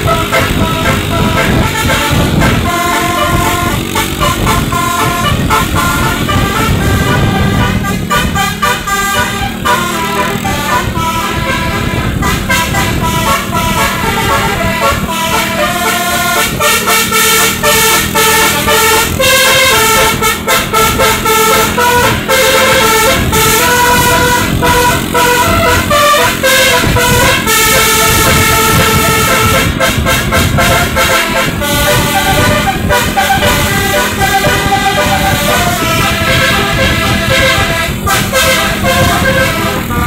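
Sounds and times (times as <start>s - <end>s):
bus engine rumble: 0.0s - 40.0s
musical bus horn: 0.0s - 40.0s.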